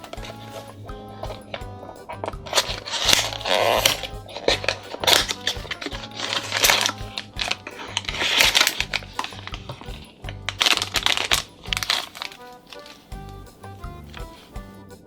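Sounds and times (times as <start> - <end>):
background music with bass: 0.0 - 15.0
packaging crinkling and tearing: 2.5 - 13.1.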